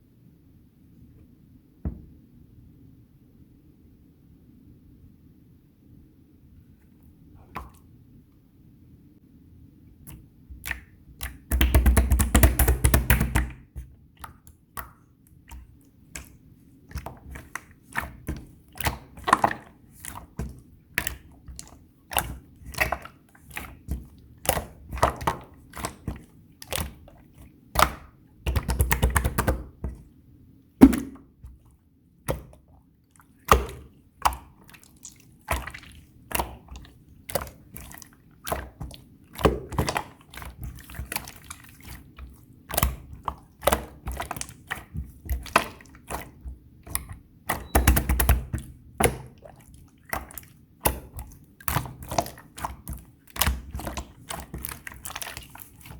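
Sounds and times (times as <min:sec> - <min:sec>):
slime squished by hand: 0:30.8 - 0:31.6, 0:33.4 - 0:55.9.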